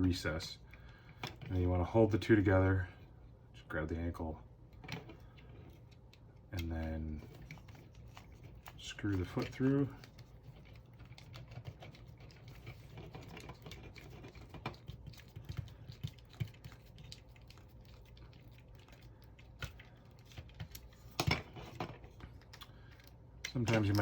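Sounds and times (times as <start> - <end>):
faint steady hum: 0.0 - 24.0.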